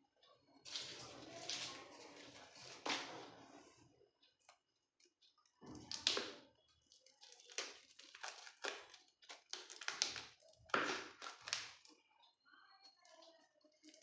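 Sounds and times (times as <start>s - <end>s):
packaging crinkling and rustling: 7.0s - 11.8s.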